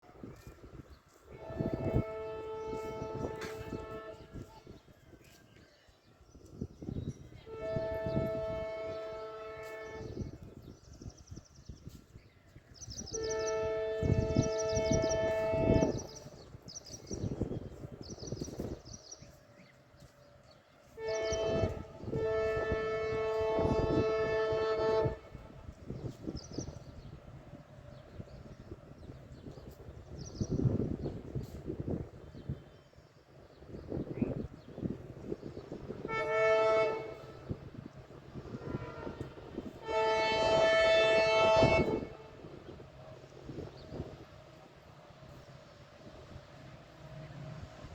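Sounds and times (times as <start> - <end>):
two-tone train horn: 1.3 - 4.8, 7.3 - 10.5, 12.9 - 16.4, 20.8 - 27.2, 34.3 - 44.6.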